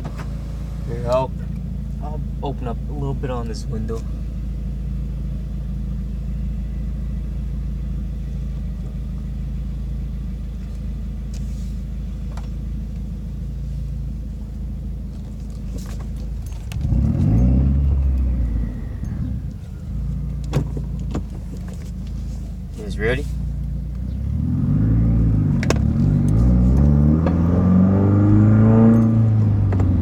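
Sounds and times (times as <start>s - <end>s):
car engine and exhaust drone: 0.0s - 30.0s.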